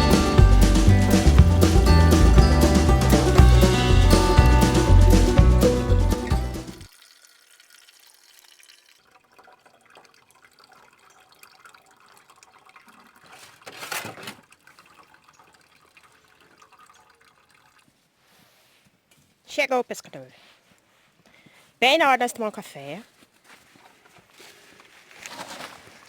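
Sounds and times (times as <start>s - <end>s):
water trickling or splashing: 6.2s - 18.2s.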